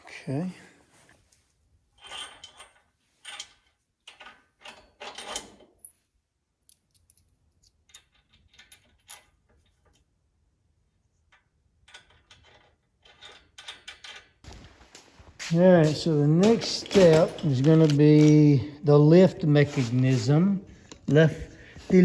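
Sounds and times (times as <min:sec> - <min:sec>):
metal hardware clinking and rattling: 0:15.4 - 0:18.6.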